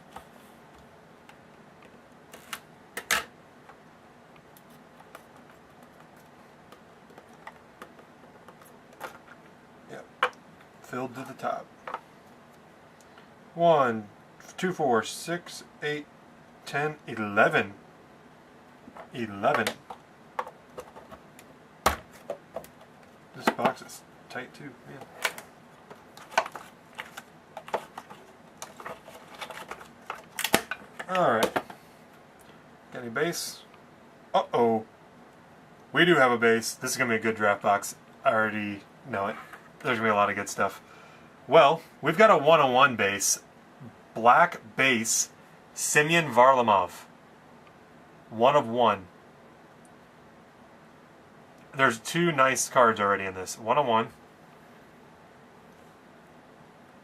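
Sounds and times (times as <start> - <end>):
clicks and taps handling a box: 4.6 - 9.4, 25.0 - 31.8.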